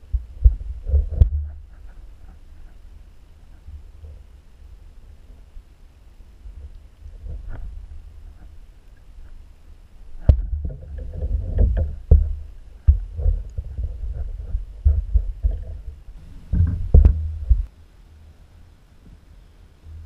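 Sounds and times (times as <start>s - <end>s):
knocks and bumps in a canoe: 0.0s - 2.8s, 10.2s - 17.7s
low rumble: 0.0s - 18.6s.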